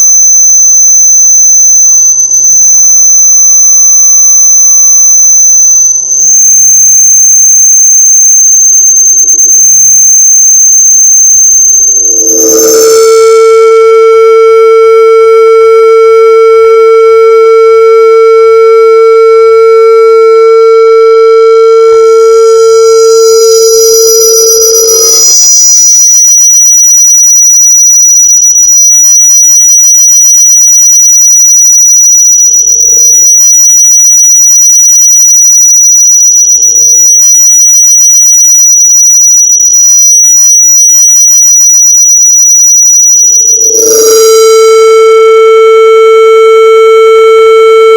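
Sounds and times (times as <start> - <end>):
speaker feedback howl: 0.0 - 26.4, 43.2 - 47.9.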